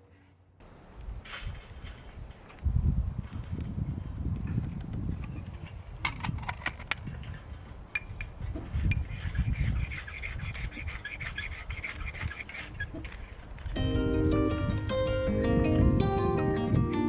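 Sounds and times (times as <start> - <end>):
rubbing and scraping: 8.4 - 13.8.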